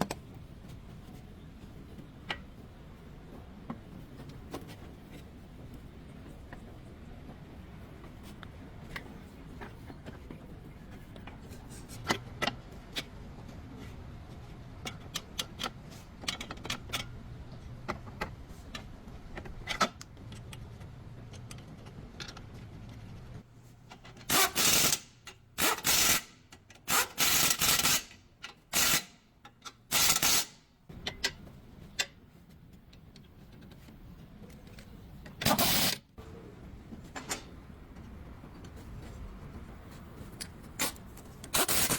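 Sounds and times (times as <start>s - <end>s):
rattling power tool bursts: 35.4s - 36.0s.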